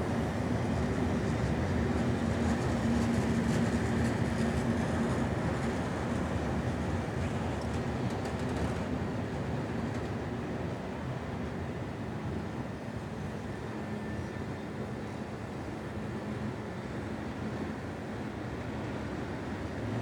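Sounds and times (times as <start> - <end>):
freight train wheels rumbling: 0.0 - 12.6
light clicks of train wheels: 0.0 - 20.0.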